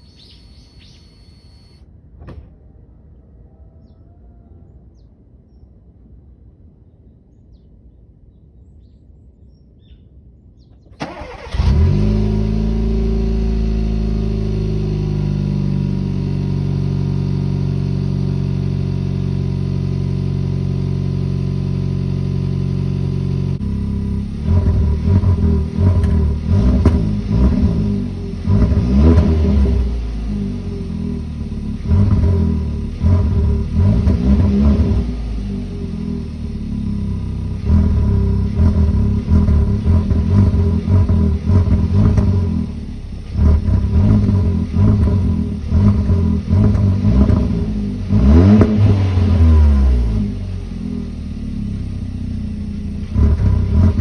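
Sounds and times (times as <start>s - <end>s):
car engine starting and revving: 11.0s - 54.0s.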